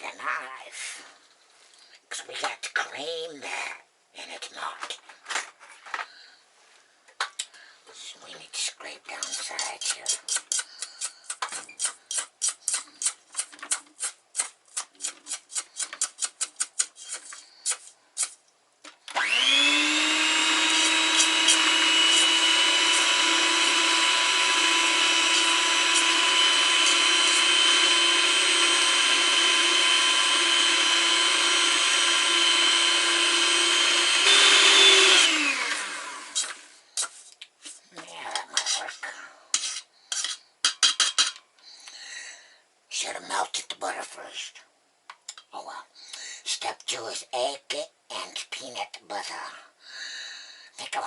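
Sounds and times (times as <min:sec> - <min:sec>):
knife scraping mixing bowl: 0:09.2 - 0:18.4, 0:36.3 - 0:41.4
electric mixer whining: 0:19.1 - 0:36.7.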